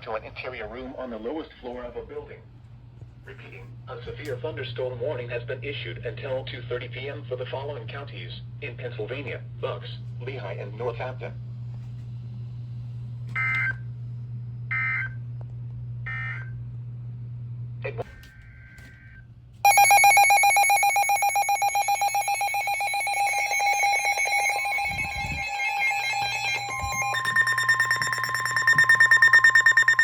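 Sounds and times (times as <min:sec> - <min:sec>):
pulsing electronic alert tone: 0:19.7 - 0:30.0
screechy digital data bursts: 0:19.7 - 0:30.0.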